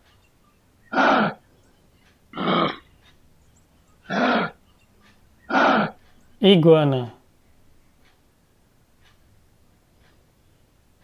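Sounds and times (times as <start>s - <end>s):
kangaroo grunting coughs: 0.9s - 1.4s, 2.3s - 2.9s, 4.1s - 4.6s, 5.5s - 6.0s.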